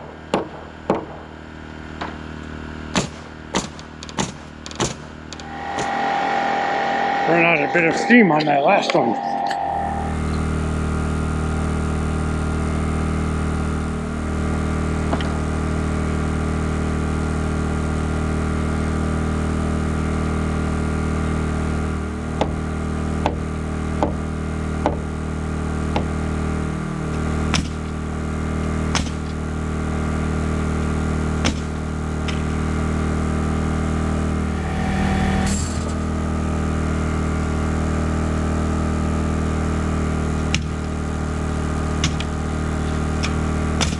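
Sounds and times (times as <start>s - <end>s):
sharp nailing strikes: 2.9s - 6.0s, 27.5s - 28.0s, 28.9s - 29.4s, 31.4s - 32.5s, 40.4s - 40.9s, 42.0s - 43.9s
engine droning: 3.3s - 18.4s, 25.4s - 37.0s, 38.2s - 43.9s.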